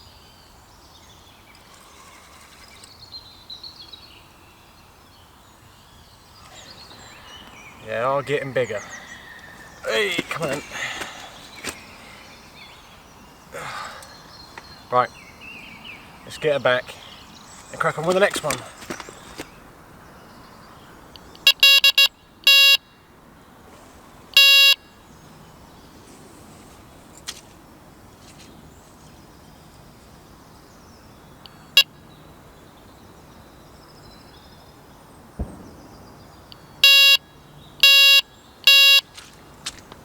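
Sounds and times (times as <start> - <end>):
electronic bite alarm beeping: 21.5 - 22.8, 24.4 - 24.8, 36.8 - 37.2, 37.8 - 39.0.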